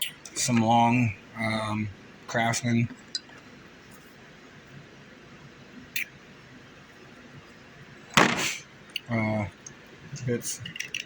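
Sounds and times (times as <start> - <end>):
tool bits clattering: 10.6 - 11.0.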